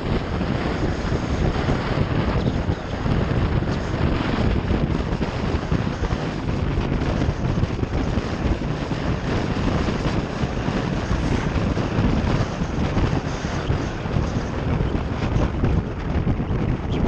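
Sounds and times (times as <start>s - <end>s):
motorcycle running: 0.0s - 17.0s
wind rush on microphone: 0.0s - 17.0s.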